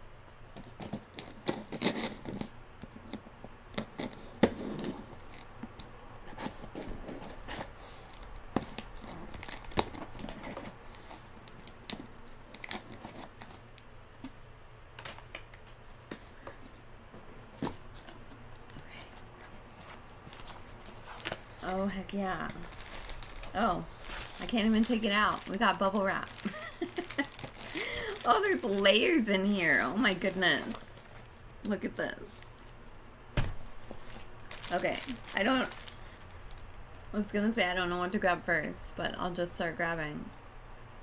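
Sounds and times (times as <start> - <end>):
packaging being torn: 8.7 - 10.5, 22.5 - 28.8, 34.1 - 37.0.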